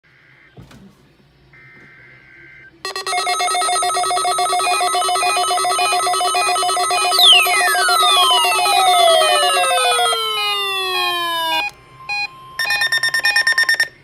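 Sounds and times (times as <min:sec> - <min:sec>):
buzzing digital data tones: 0:02.9 - 0:13.9
pulsing electronic alarm: 0:02.9 - 0:14.0.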